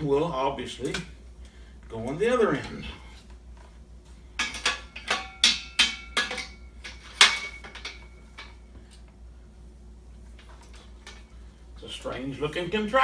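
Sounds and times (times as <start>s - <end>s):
metal rack parts clanking: 4.4s - 8.6s.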